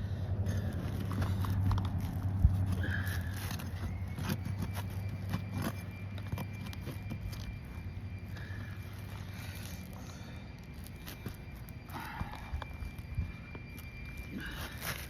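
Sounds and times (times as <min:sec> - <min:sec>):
steady low rumble: 0:00.0 - 0:15.0
tool scraping shingles: 0:00.6 - 0:12.2.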